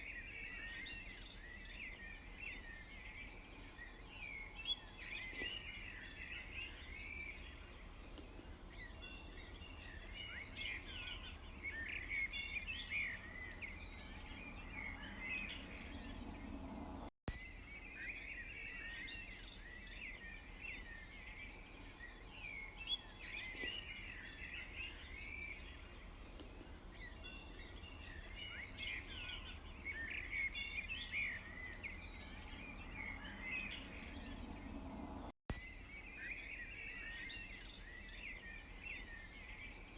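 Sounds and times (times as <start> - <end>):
small birds chirping: 0.0 - 39.9
low steady hum: 6.8 - 17.1, 30.5 - 35.3.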